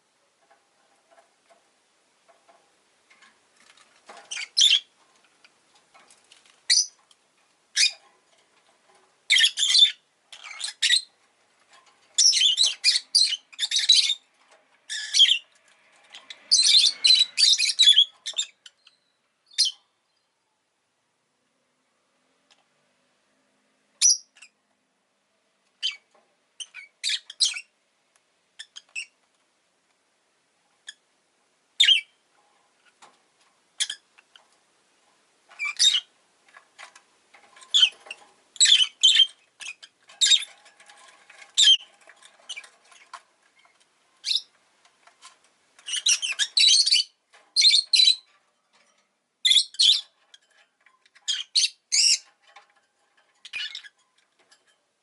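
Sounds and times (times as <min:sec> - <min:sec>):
lovebird chirps and squawks: 0:04.3 - 0:04.9, 0:06.7 - 0:07.0, 0:07.8 - 0:08.0, 0:09.3 - 0:11.1, 0:12.2 - 0:14.2, 0:14.9 - 0:15.5, 0:16.1 - 0:19.8, 0:24.0 - 0:24.6, 0:25.8 - 0:26.0, 0:26.6 - 0:27.7, 0:28.6 - 0:29.2, 0:31.8 - 0:32.2, 0:33.8 - 0:34.0, 0:35.6 - 0:36.1, 0:37.7 - 0:40.6, 0:41.6 - 0:41.9, 0:44.2 - 0:44.5, 0:45.8 - 0:48.3, 0:49.4 - 0:50.2, 0:51.3 - 0:52.3, 0:53.4 - 0:54.0.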